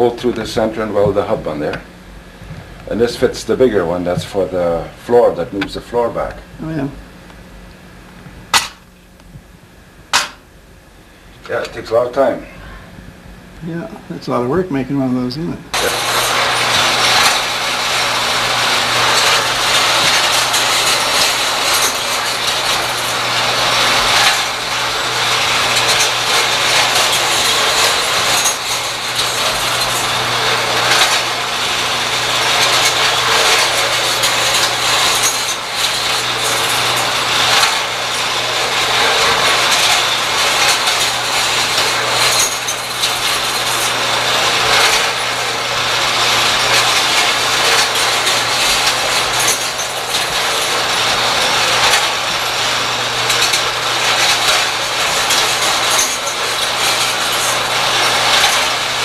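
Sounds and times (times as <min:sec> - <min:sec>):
mechanical clatter of gears: 0:08.5 - 0:09.0, 0:15.7 - 0:59.0
small engine running: 0:15.7 - 0:59.0.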